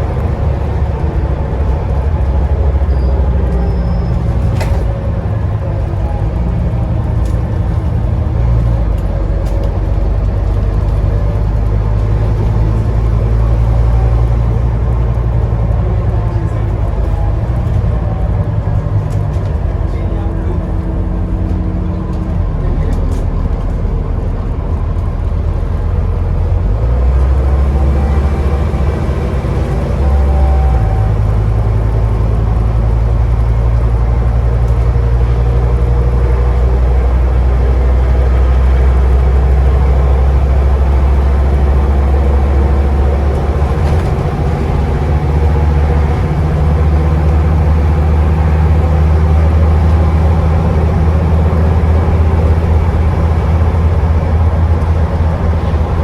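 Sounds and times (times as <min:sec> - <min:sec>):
bus engine drone: 0:00.0 - 0:56.0.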